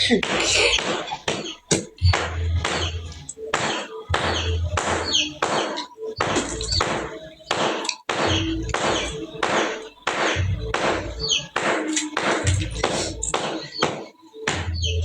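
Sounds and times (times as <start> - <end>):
background music with beat: 0.0 - 15.0.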